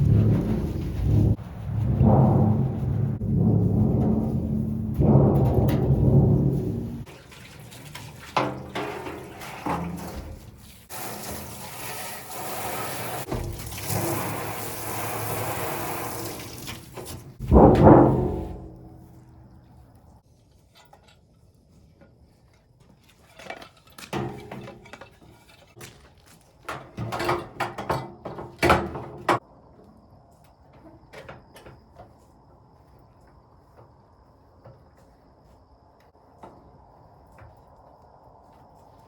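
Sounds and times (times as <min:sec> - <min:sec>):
clattering knocks and clicks: 0:00.0 - 0:07.2.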